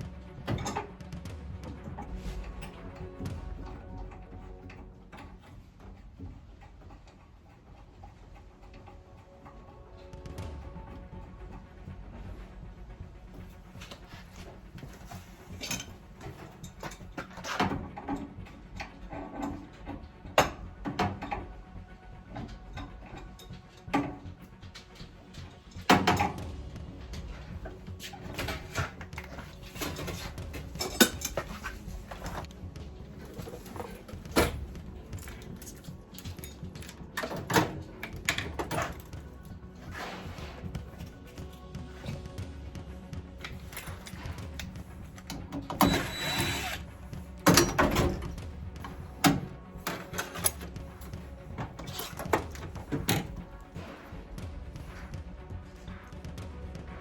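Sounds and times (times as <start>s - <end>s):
tools knocking and clattering: 0.0s - 12.2s, 13.2s - 42.4s, 43.4s - 53.9s
background music: 0.0s - 57.0s.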